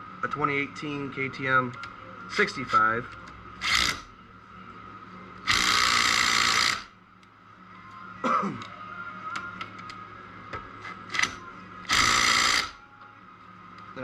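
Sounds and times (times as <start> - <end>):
cordless power driver spinning: 3.6 - 4.1, 5.5 - 6.9, 11.9 - 12.8.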